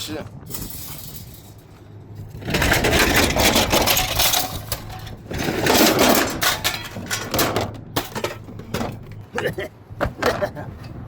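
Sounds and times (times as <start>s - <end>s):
scrap metal clattering: 0.4s - 9.2s.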